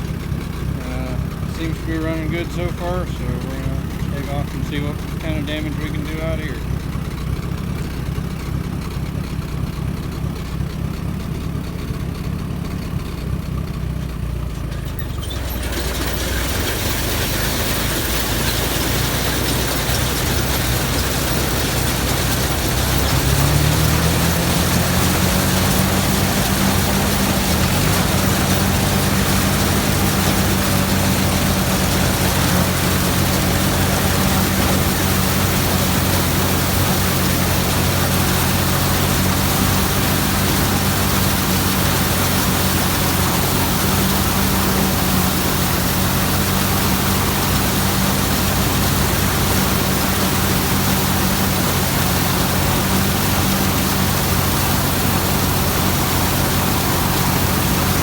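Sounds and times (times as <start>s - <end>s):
combine harvester engine drone: 0.0s - 58.0s
machine rushing noise: 15.4s - 58.0s.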